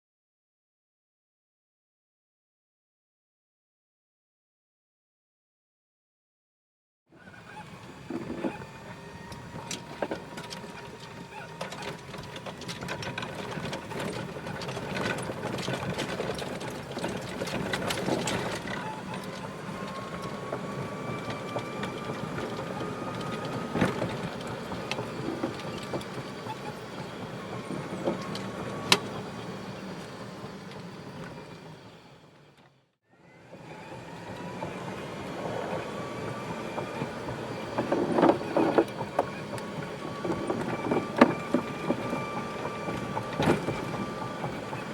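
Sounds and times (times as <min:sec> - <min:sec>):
cart running noise: 0:07.2 - 0:44.9
electric motor whine: 0:07.2 - 0:44.9.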